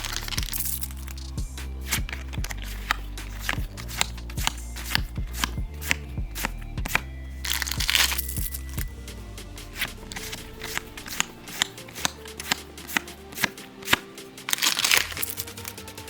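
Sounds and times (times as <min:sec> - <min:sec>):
sustained bass: 0:00.0 - 0:13.4
kick drum beat: 0:01.3 - 0:11.2.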